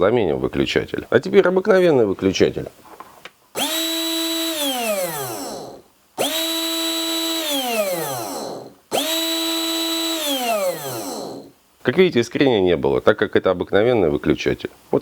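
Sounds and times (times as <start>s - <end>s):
small electric motor whining: 3.6s - 11.5s.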